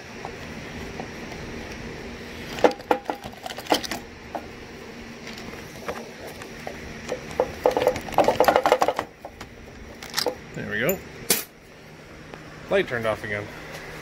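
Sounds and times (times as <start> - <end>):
faint steady hum: 0.0 - 14.0
clicks and knocks of engine parts: 2.5 - 4.5, 5.2 - 10.5.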